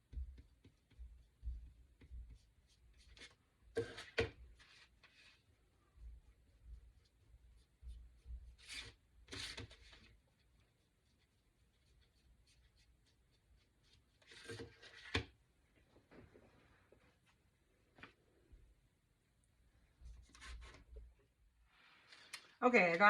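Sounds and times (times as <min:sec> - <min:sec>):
paintbrush rubbing strokes: 0:00.0 - 0:14.4.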